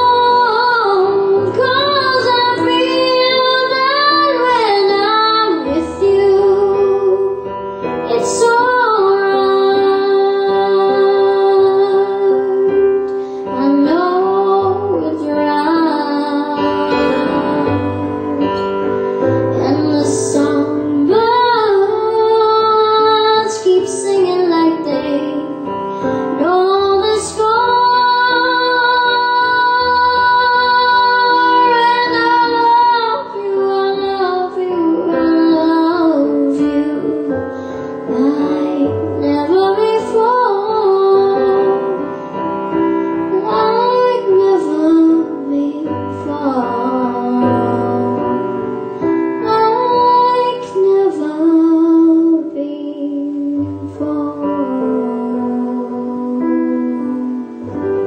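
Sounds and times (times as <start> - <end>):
instrumental accompaniment: 0.0 - 58.0
woman singing a ballad: 0.0 - 58.0.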